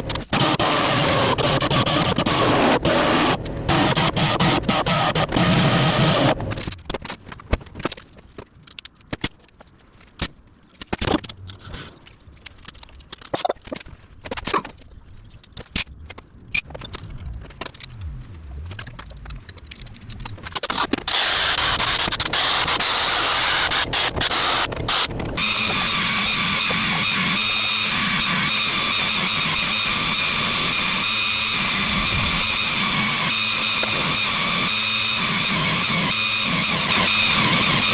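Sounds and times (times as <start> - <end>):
power tool whining: 0.0 - 6.6, 20.4 - 37.9.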